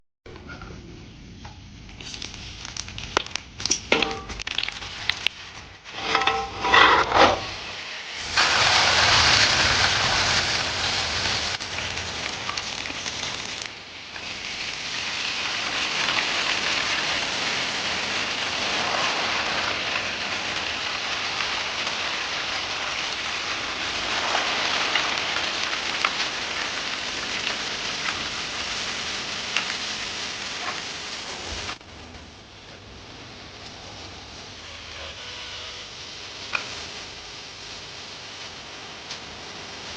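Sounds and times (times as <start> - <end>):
chicken sizzling in hot oil: 1.8 - 31.8, 32.4 - 39.9
cookware clattering: 6.0 - 7.6.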